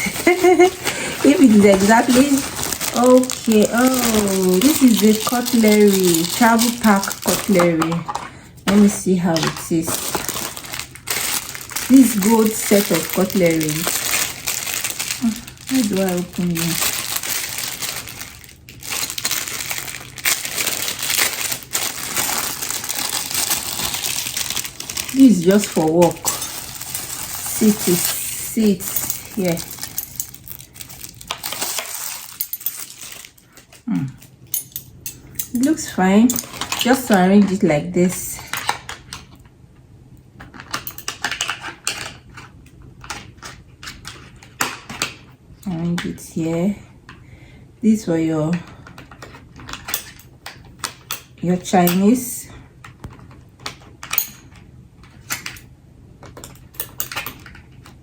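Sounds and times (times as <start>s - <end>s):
packaging rustling and crinkling: 0.0s - 34.4s, 36.3s - 37.6s.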